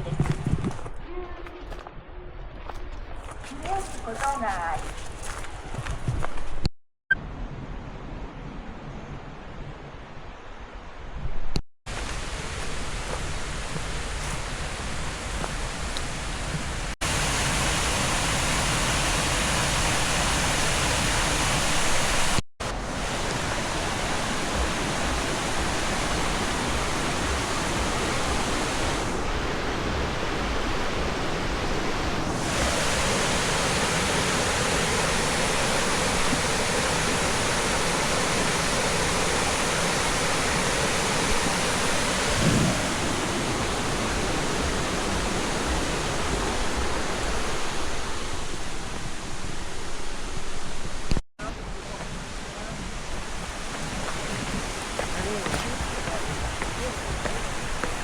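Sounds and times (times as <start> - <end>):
flowing water rushing: 11.9 - 58.0.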